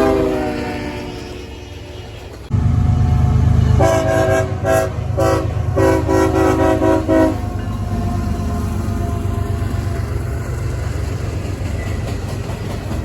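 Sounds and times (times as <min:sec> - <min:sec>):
train air horn blasts: 0:00.0 - 0:01.6, 0:03.5 - 0:07.7
train rumbling past: 0:00.0 - 0:13.0.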